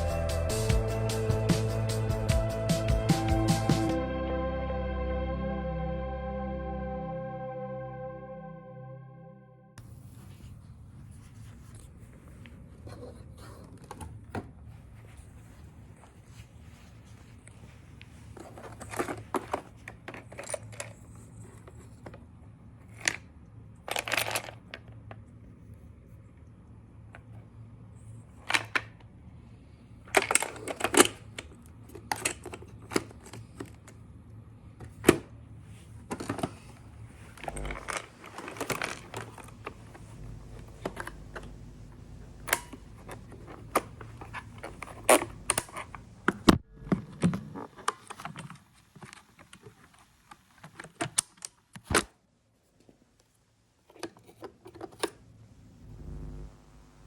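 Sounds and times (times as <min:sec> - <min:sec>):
plastic bricks clattering: 0:23.9 - 0:24.8, 0:37.4 - 0:46.0
robot vacuum motor humming: 0:37.3 - 0:47.6, 0:55.8 - 0:57.0.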